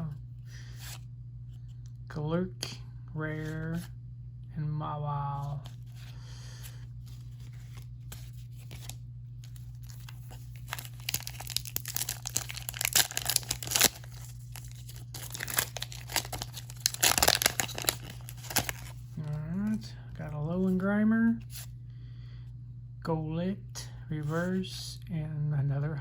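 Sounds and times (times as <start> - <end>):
foil wrapper crinkling and tearing: 7.1 - 19.4.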